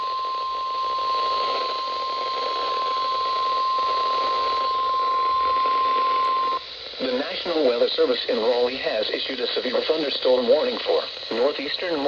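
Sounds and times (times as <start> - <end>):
steady warning alarm tone: 0.0 - 6.8
radio static hiss: 0.0 - 12.0.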